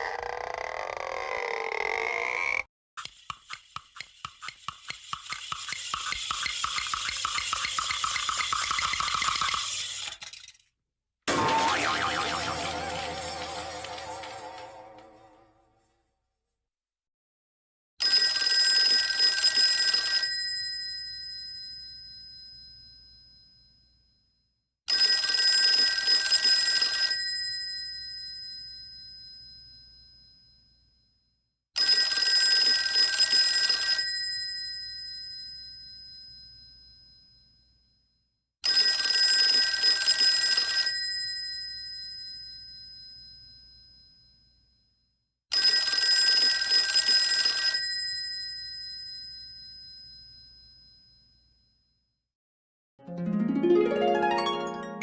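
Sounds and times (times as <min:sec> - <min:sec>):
telephone bell ringing: 0:11.4 - 0:15.0, 0:18.0 - 0:22.8, 0:24.9 - 0:30.0, 0:31.8 - 0:36.6, 0:38.6 - 0:43.4, 0:45.5 - 0:50.8.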